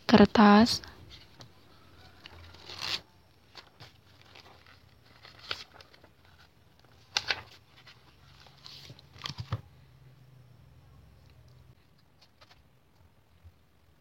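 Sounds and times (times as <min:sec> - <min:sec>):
paper and packaging rustling: 0:01.1 - 0:09.7.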